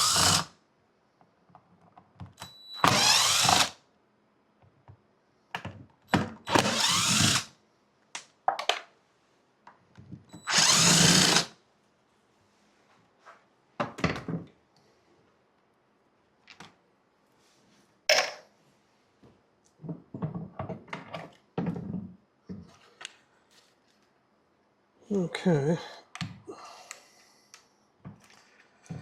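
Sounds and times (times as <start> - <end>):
cordless drill backing out screws: 0.0 - 0.4, 2.8 - 3.7, 6.5 - 7.4, 10.4 - 11.5
drill trigger clicks: 2.8 - 3.7, 6.5 - 7.4, 10.4 - 11.5.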